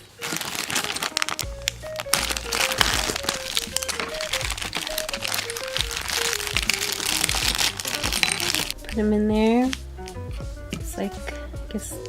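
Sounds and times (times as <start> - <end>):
plastic toy pieces clicking: 0.0 - 8.8
plastic packaging crinkling: 0.0 - 9.0
simple melody background music: 0.0 - 12.0.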